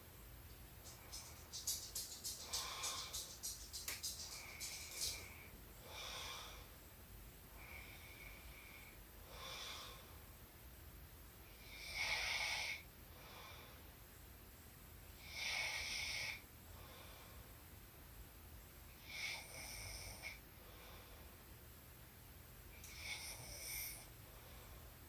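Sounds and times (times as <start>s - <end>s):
woman snoring: 11.6s - 12.8s.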